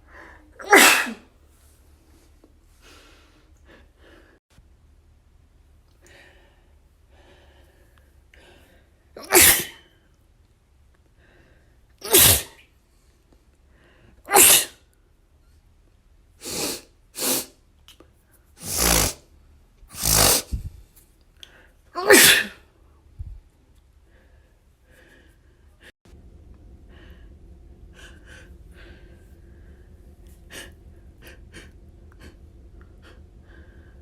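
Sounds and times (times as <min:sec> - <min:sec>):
person sneezing: 0:00.6 - 0:01.3, 0:09.2 - 0:09.8, 0:12.0 - 0:12.6, 0:14.3 - 0:14.8, 0:16.4 - 0:17.5, 0:18.6 - 0:19.2, 0:19.9 - 0:20.7, 0:22.0 - 0:22.6.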